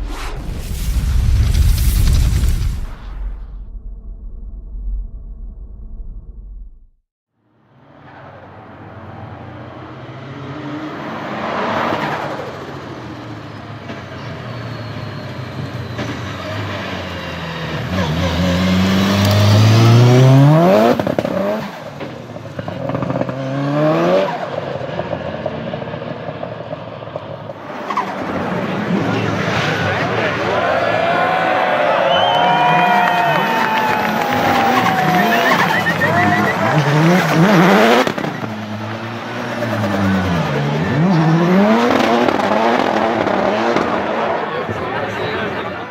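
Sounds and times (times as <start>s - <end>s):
turbocharged engine revving hard: 17.7s - 21.7s, 34.0s - 44.5s.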